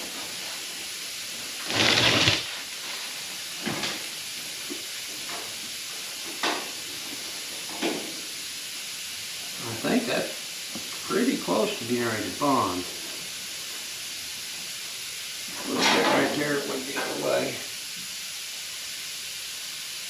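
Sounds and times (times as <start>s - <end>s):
steady hiss: 0.0s - 20.0s
sheet metal scraping: 1.6s - 2.6s.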